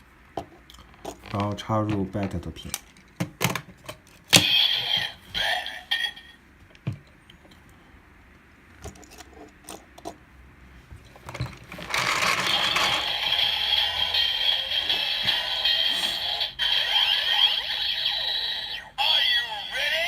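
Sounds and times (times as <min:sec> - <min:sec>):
toy belt electronic sound effects: 0:11.9 - 0:20.0.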